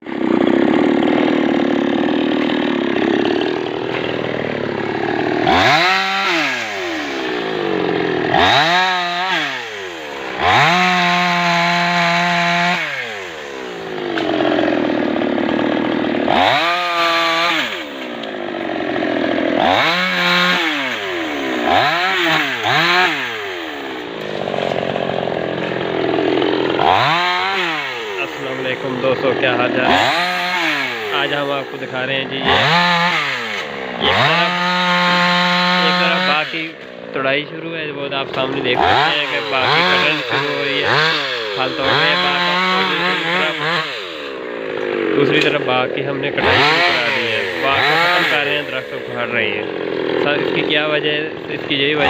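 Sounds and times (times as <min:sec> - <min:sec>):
chainsaw revving cutting wood: 0:00.0 - 0:52.0.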